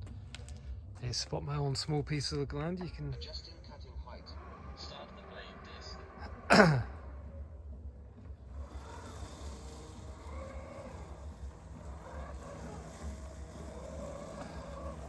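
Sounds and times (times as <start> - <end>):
blade motor high whine: 2.5 - 15.0
mower blade downward sweep: 3.0 - 15.0.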